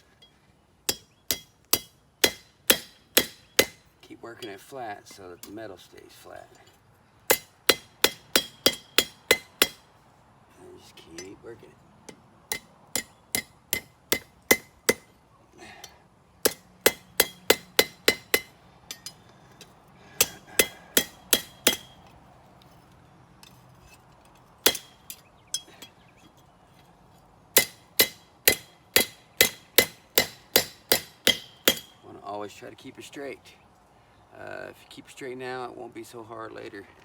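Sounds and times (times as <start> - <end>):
hammer striking steel on anvil: 0.9 - 3.8, 7.3 - 9.8, 12.1 - 15.1, 16.4 - 22.1, 24.6 - 26.0, 27.6 - 32.0.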